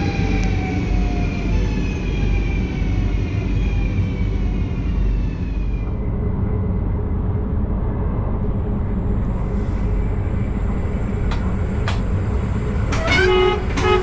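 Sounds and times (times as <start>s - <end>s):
train low rumble: 0.0s - 14.0s
train falling whine: 8.6s - 14.0s.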